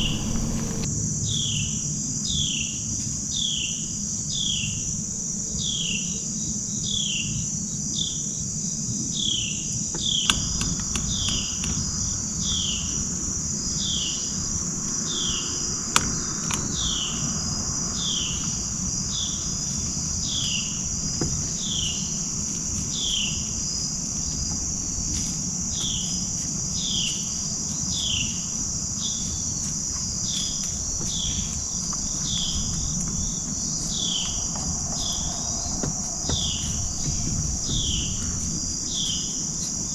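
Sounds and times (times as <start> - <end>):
faint clicks: 0.0 - 0.9
insect chirps: 0.0 - 0.9.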